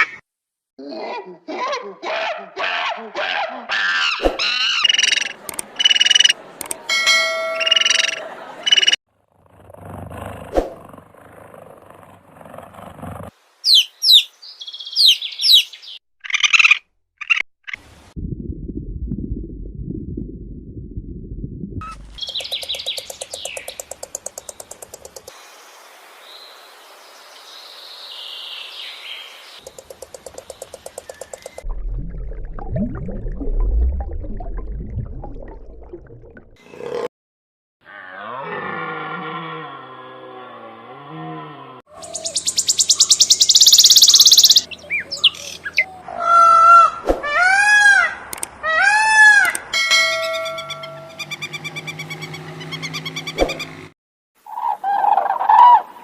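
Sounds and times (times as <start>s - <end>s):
bird calls rising and falling: 4.0s - 6.4s, 7.5s - 9.0s, 13.6s - 17.8s, 21.8s - 25.3s, 28.1s - 31.6s, 42.0s - 53.9s
bird trilling: 4.0s - 6.4s, 7.4s - 9.0s, 13.7s - 17.8s, 21.8s - 24.8s, 41.9s - 47.0s, 49.2s - 53.8s
bird chirps: 4.4s - 6.4s, 7.4s - 9.0s, 13.7s - 17.8s, 21.8s - 25.1s, 27.9s - 31.6s, 41.9s - 46.0s, 50.0s - 53.8s
bird sharp chattering notes: 4.7s - 6.4s, 7.6s - 9.0s, 22.2s - 25.3s, 42.0s - 45.9s
sharp click: 5.4s - 6.8s, 48.3s - 48.6s
bird low pulsing rumble: 18.2s - 23.9s.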